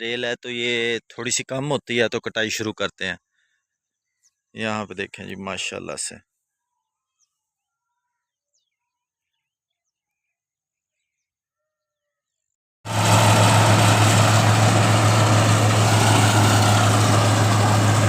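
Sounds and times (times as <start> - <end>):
diesel engine running: 12.9 - 18.0.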